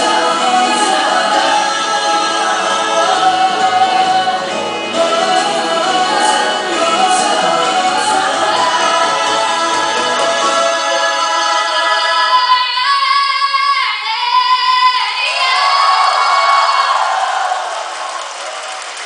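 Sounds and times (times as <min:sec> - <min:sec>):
pop ballad with choir-like singing: 0:00.0 - 0:18.1.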